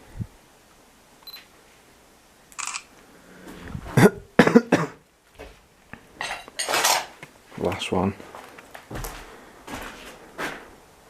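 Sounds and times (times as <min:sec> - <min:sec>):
breathy hiss: 0:02.7 - 0:04.0
man coughing: 0:04.0 - 0:05.0.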